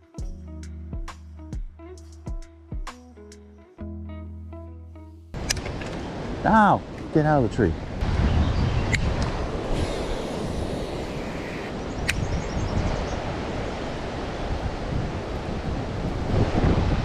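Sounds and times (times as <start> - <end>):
wind buffeting microphone: 7.7 - 17.0
sharp click: 12.0 - 12.3.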